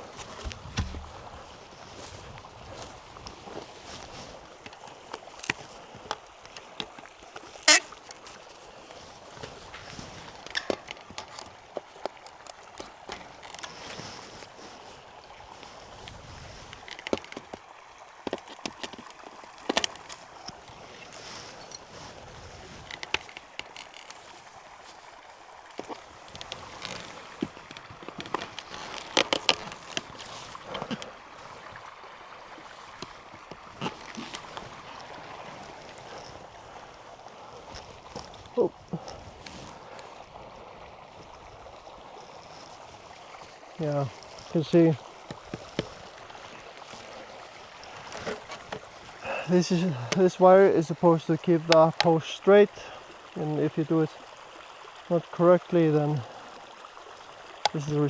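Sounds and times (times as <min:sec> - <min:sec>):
faint outdoor noise: 0:00.0 - 0:58.0
hand tools clinking on wire fence: 0:09.9 - 0:11.5, 0:20.4 - 0:22.2.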